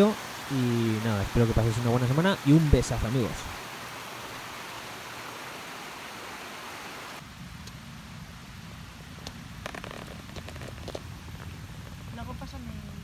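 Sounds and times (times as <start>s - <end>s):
stream water rushing: 0.0s - 7.3s.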